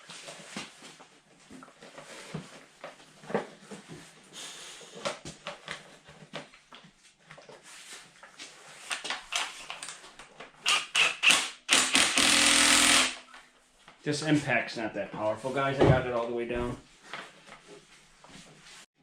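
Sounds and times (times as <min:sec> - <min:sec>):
impact driver running bolt: 0:10.6 - 0:13.2.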